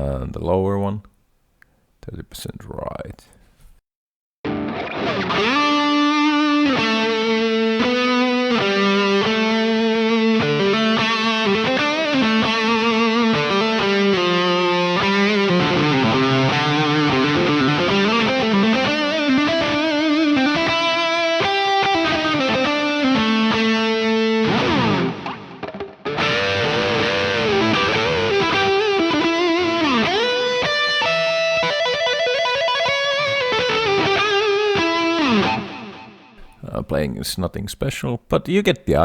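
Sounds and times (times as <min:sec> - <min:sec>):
distorted electric guitar lead: 0:04.5 - 0:36.2.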